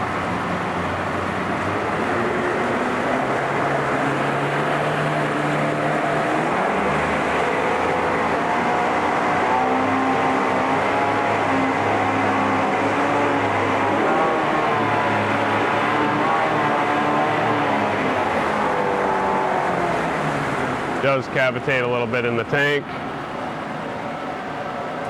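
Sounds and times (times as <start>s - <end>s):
outboard motor running: 0.0s - 25.0s.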